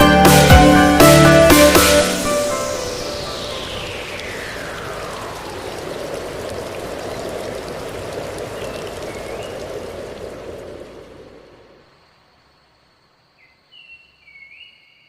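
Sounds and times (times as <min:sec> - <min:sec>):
rushing water: 0:00.0 - 0:12.9
tone sliding down in pitch: 0:00.7 - 0:05.8.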